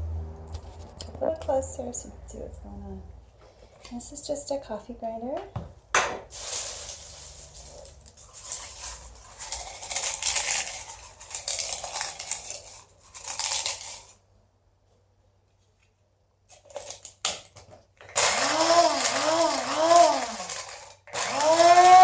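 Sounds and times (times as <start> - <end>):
dried leaves rustling and crackling: 6.3 - 14.1
coffee grinder motor: 6.6 - 14.1, 18.1 - 22.0.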